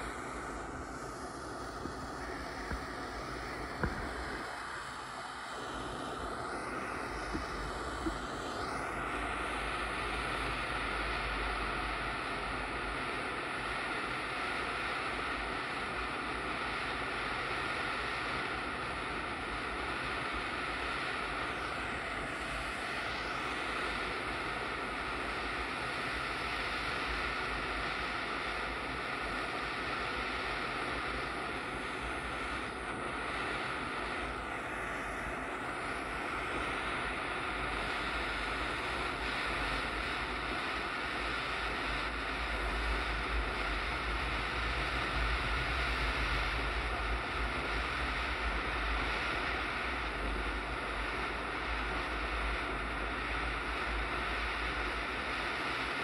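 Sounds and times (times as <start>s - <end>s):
gas torch hissing roar: 0.0s - 56.0s.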